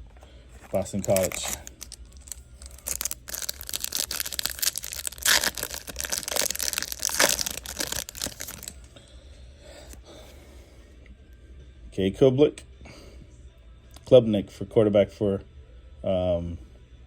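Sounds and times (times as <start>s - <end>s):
foil wrapper and cards crinkling: 0.6s - 8.9s.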